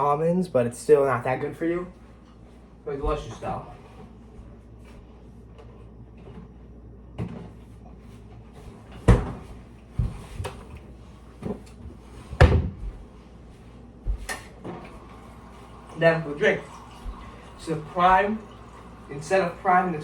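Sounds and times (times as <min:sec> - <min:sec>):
knocks and thuds in kitchen: 0:09.0 - 0:10.8, 0:11.4 - 0:13.1.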